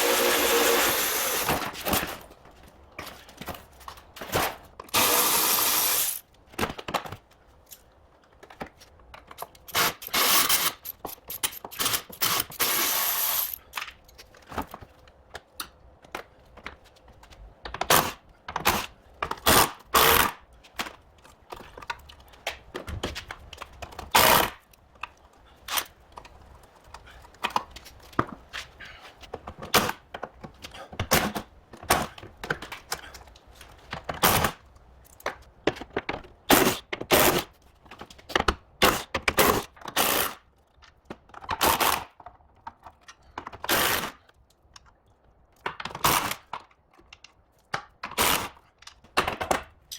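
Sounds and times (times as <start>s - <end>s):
power tool bursts: 0.0s - 1.7s, 4.9s - 6.2s, 9.7s - 10.8s, 11.8s - 13.6s
clicks and knocks of tools: 6.3s - 12.7s.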